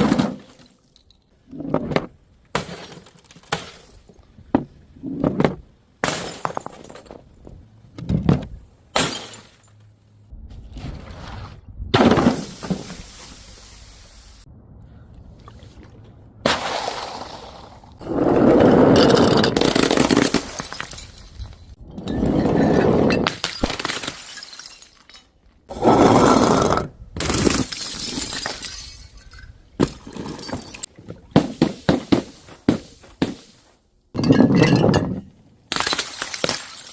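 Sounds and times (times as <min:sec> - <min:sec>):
glass bottles shattering: 0:09.0 - 0:09.8, 0:19.1 - 0:25.4, 0:27.5 - 0:30.9, 0:34.2 - 0:36.9.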